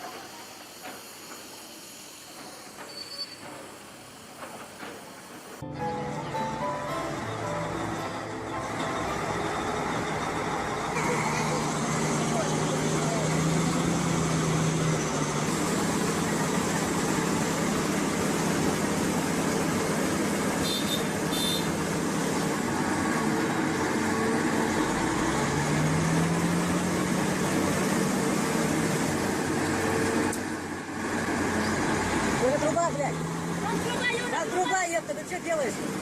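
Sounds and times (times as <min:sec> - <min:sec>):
heavy engine humming: 0:00.0 - 0:36.0.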